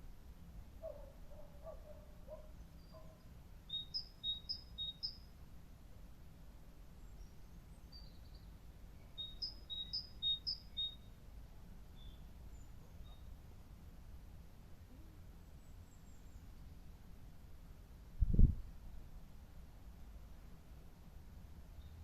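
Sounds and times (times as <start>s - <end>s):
songbird chirping: 0.8s - 5.4s, 6.9s - 11.2s, 11.8s - 13.6s, 14.9s - 16.8s
lower bird calls: 1.8s - 5.2s, 7.9s - 11.1s.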